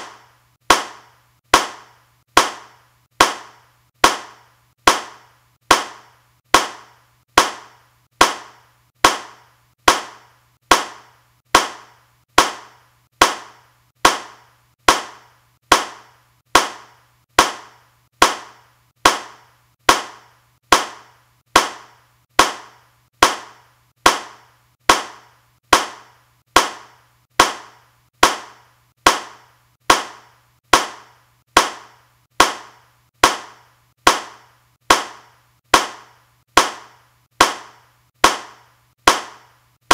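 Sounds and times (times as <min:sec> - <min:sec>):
hand claps: 0:00.0 - 0:13.5.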